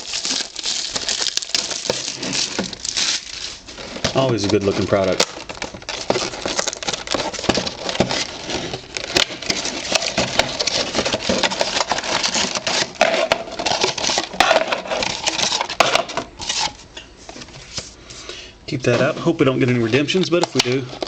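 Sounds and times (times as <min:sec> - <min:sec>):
plastic wrap crinkling and tearing: 0:00.0 - 0:16.8.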